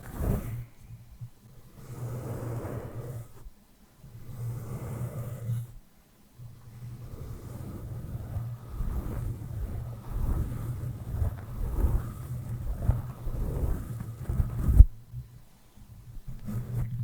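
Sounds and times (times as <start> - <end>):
brush swishing over microphone: 0.0 - 0.8, 6.9 - 15.0.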